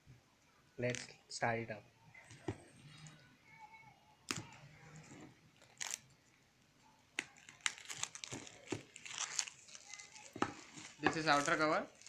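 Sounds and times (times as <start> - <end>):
packaging crinkling and crackling: 4.3 - 6.2, 7.2 - 12.0.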